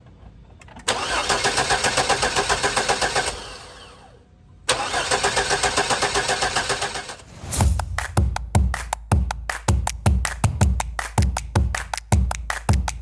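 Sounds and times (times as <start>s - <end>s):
engine cranking on starter: 0.7s - 4.1s, 4.7s - 7.3s.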